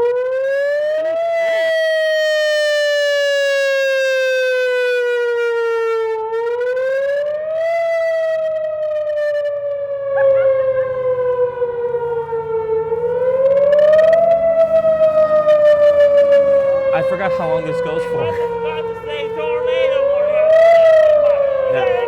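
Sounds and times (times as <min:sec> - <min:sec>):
warning siren wailing: 0:00.0 - 0:22.0.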